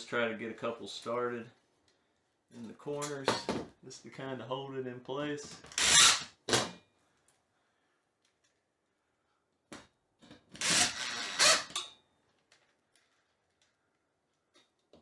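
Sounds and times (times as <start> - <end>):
metal bracket scraping ceiling: 10.6 - 11.9.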